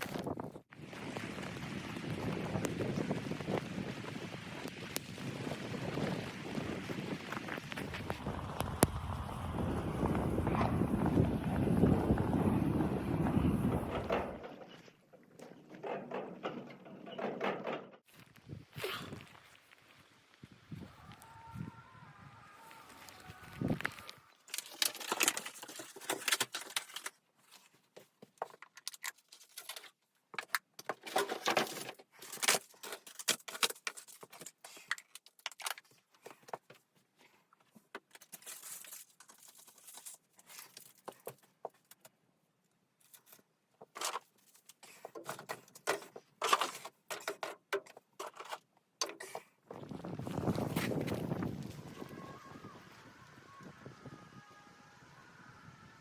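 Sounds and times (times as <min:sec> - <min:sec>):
objects clinking and rustling: 0:24.4 - 0:27.2.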